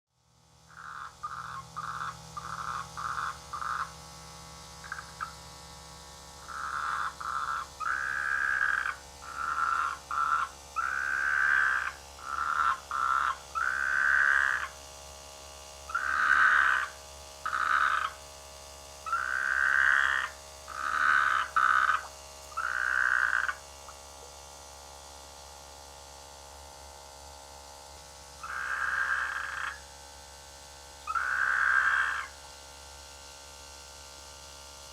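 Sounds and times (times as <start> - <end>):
frogs croaking: 0.7 - 4.0, 4.8 - 5.5, 6.4 - 14.9, 15.9 - 18.3, 19.0 - 24.1, 28.4 - 30.0, 31.0 - 32.5.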